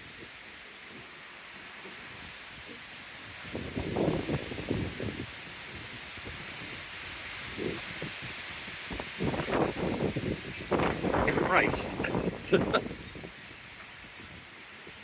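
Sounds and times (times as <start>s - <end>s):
rain hissing: 0.0s - 15.0s
wind buffeting microphone: 3.2s - 14.6s.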